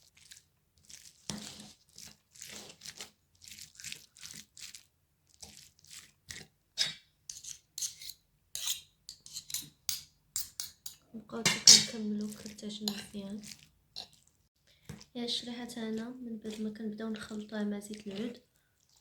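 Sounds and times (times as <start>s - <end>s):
fork mashing sticky paste: 0.0s - 19.0s
fork scraping a plate: 1.1s - 4.4s, 6.3s - 14.3s.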